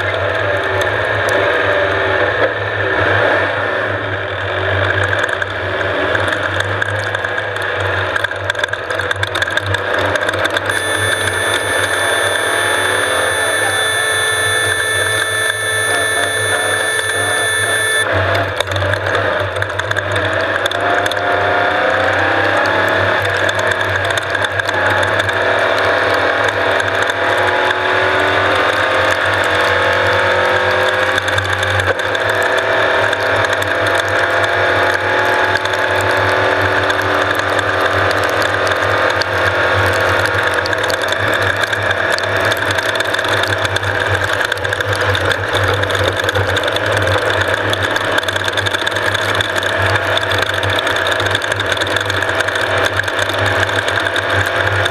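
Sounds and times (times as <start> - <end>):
race vehicle engine whine: 10.6 - 18.4.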